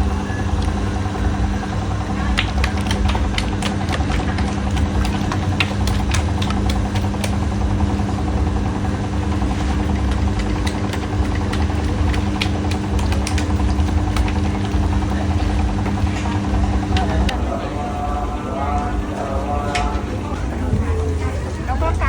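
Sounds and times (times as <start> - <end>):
motor humming: 0.0 - 22.0
clicks and clatter: 2.3 - 7.6, 9.4 - 17.4.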